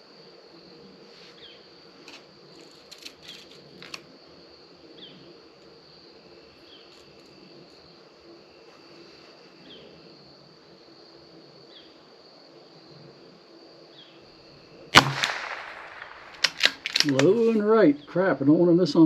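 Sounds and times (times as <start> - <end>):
rifle shot: 15.0 - 17.5.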